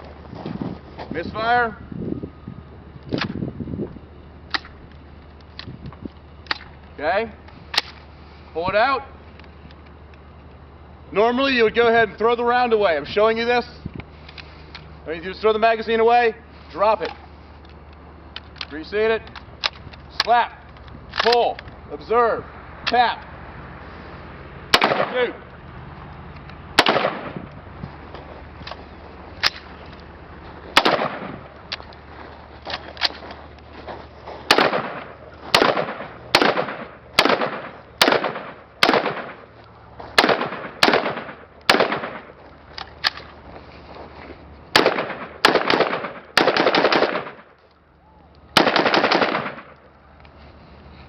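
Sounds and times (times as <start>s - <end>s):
rifle single shots echoing: 24.7s - 25.4s, 26.8s - 27.5s, 30.8s - 31.6s, 34.5s - 39.6s, 40.2s - 42.4s, 44.7s - 47.5s, 48.6s - 49.8s.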